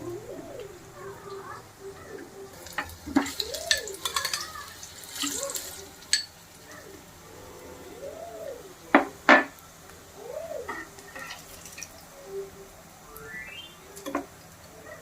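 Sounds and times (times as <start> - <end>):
metal utensils clinking in pan: 2.6 - 6.6.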